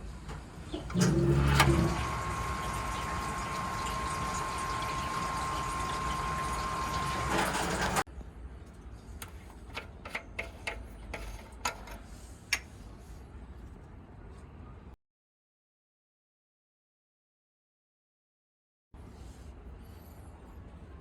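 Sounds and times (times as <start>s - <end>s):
water pump running with whine: 0.6s - 8.0s.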